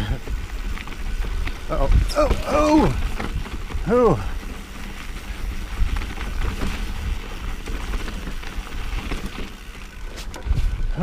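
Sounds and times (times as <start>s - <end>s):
bike knocks and rattles: 0.0s - 11.0s
bike tyres crunching over dirt: 0.0s - 11.0s.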